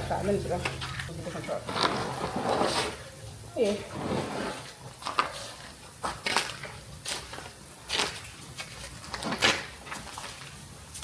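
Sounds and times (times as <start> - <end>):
knocks and scrapes: 0.7 - 3.1, 3.8 - 6.5.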